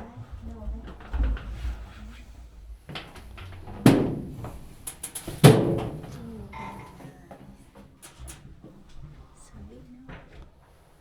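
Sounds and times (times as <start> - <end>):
low handling rumble: 0.0 - 8.6.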